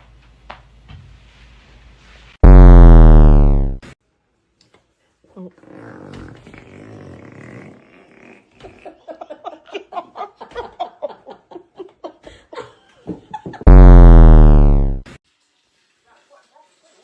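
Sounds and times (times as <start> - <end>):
long loud fart: 2.4 - 3.8, 13.7 - 15.1.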